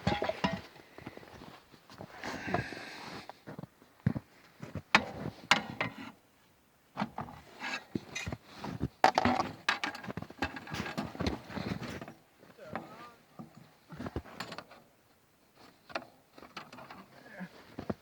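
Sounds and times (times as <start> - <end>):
wooden knocks and clunks: 0.0 - 0.7.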